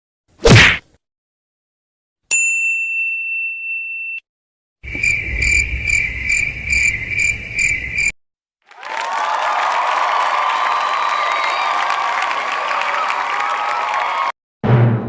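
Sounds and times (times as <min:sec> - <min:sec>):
bright ding: 0:02.3 - 0:04.2
crickets chirping: 0:04.8 - 0:08.1.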